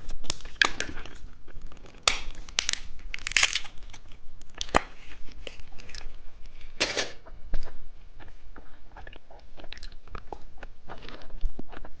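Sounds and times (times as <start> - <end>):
chewing gummy candy: 7.5 - 12.0.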